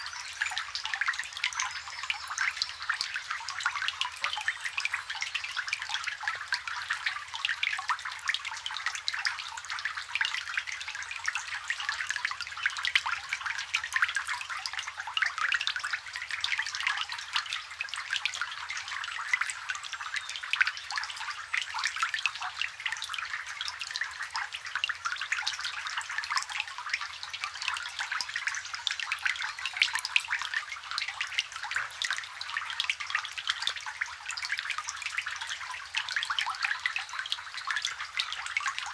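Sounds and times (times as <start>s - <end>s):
rain falling on water: 0.0s - 38.9s.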